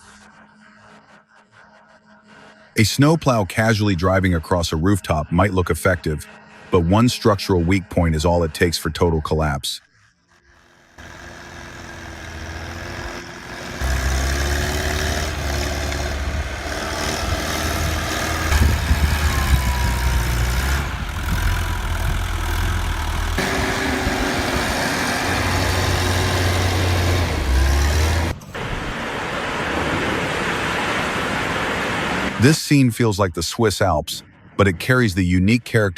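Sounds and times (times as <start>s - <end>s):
snowplow engine droning: 10.5s - 32.6s.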